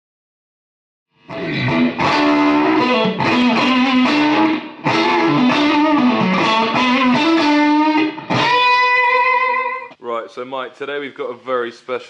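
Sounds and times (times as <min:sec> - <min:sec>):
fuzz distorted electric guitar: 0:01.1 - 0:10.0.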